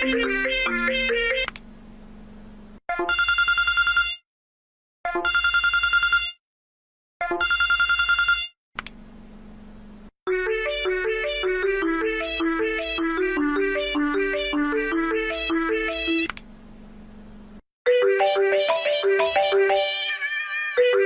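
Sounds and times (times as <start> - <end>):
tune playing: 0.0 - 1.5, 10.3 - 16.3, 17.9 - 21.0
telephone ringing: 3.1 - 4.2, 5.2 - 6.4, 7.4 - 8.5, 17.9 - 21.0.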